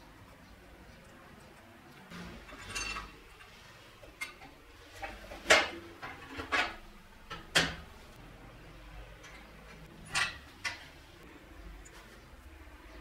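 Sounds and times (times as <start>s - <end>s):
metal tools clinking: 2.4s - 3.5s.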